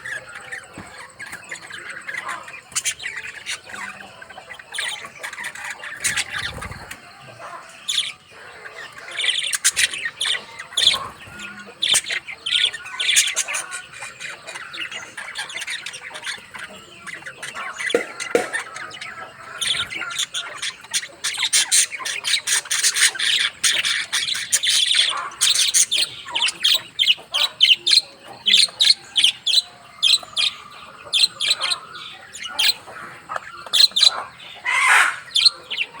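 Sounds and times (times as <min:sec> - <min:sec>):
parrots chirping and chattering: 0:00.0 - 0:36.0.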